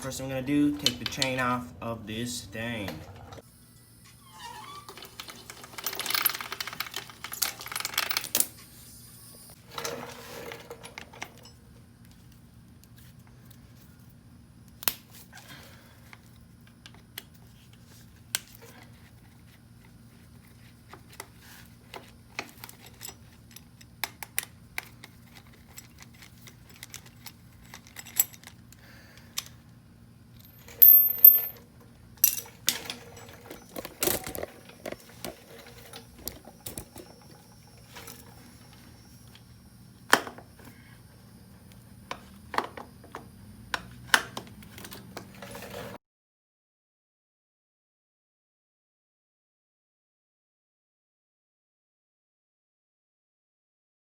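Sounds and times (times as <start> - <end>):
faint steady hum: 0.0 - 46.0
metal tools clinking and rattling: 4.7 - 8.5, 30.4 - 31.6, 32.2 - 39.4.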